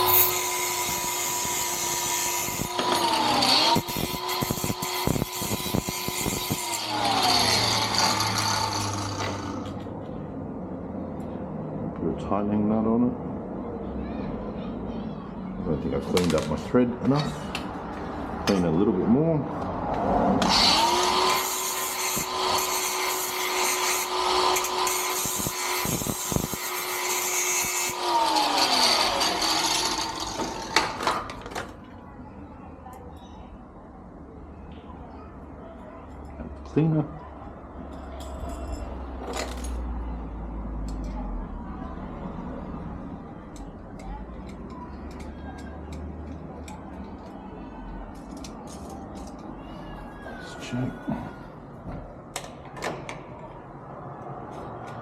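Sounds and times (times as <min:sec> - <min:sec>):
power tool whine: 0:00.0 - 0:09.8, 0:20.4 - 0:31.0.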